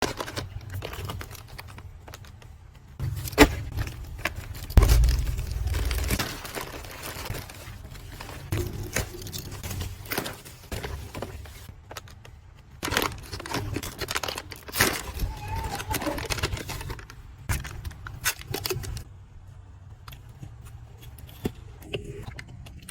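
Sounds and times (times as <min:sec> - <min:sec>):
sharp knock: 0:04.8 - 0:06.4
loud thump: 0:04.8 - 0:06.6.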